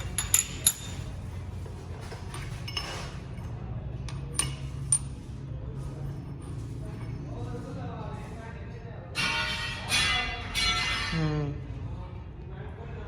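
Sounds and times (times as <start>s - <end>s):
metal tools clinking: 0.0s - 1.4s, 2.3s - 3.6s.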